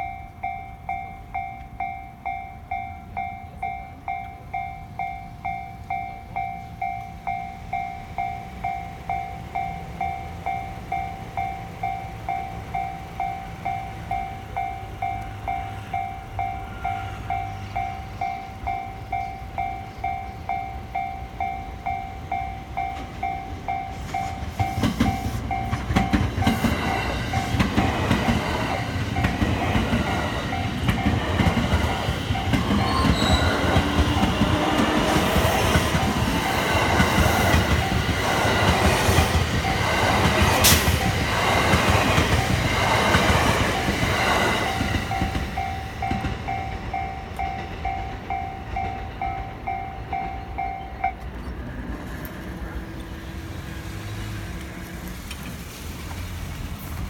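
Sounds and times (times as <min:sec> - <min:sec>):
level-crossing warning bell ringing: 0:00.0 - 0:51.6
train wheels clattering over rails: 0:22.8 - 0:57.0.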